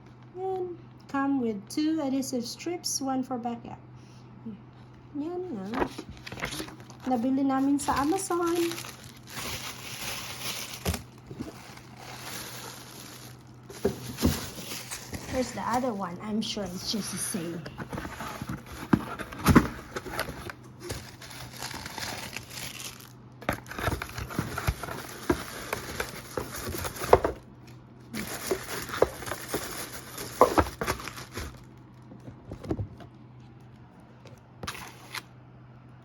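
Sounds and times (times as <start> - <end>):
plastic and cardboard packaging crinkling: 5.6 - 16.1, 16.7 - 33.0, 34.6 - 35.2.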